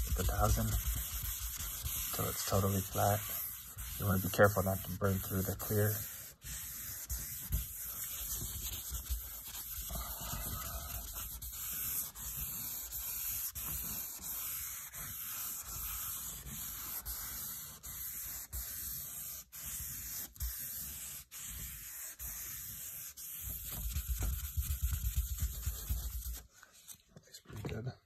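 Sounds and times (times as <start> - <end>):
wet sanding strokes: 0.0 - 26.4.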